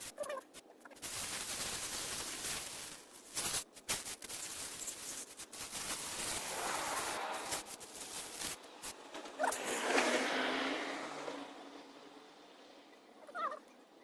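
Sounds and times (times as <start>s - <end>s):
scratchy scrubbing: 0.9s - 10.3s.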